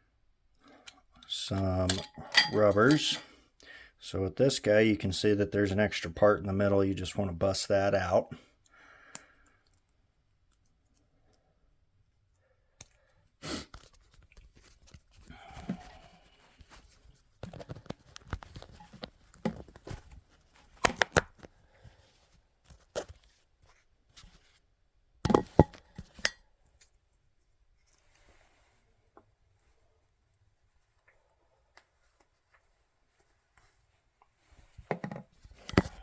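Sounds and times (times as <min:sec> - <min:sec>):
plastic clicks and snaps: 0:20.8 - 0:21.5.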